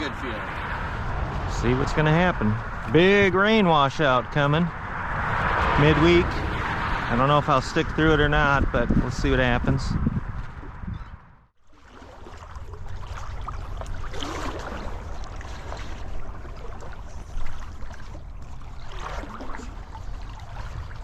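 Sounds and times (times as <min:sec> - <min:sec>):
low rumble: 0:00.0 - 0:11.5
river water flowing: 0:11.6 - 0:21.0.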